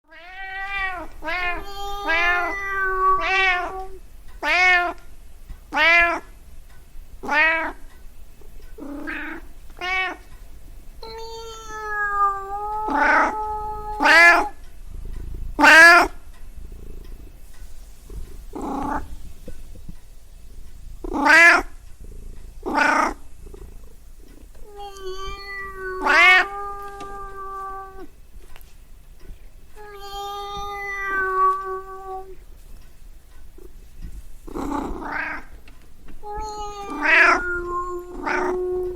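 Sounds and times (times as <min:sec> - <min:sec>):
cat meowing: 0:00.1 - 0:05.0, 0:05.7 - 0:06.3, 0:07.2 - 0:07.8, 0:08.8 - 0:10.3, 0:11.0 - 0:14.6, 0:15.6 - 0:16.2, 0:18.6 - 0:19.1, 0:21.0 - 0:21.8, 0:22.6 - 0:23.2, 0:24.6 - 0:28.1, 0:29.8 - 0:32.4, 0:34.5 - 0:35.6, 0:36.2 - 0:38.9.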